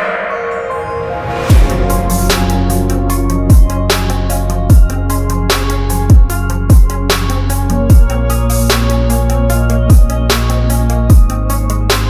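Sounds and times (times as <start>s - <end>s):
electronic music: 0.3s - 7.2s
heavy bass drop: 0.7s - 6.8s.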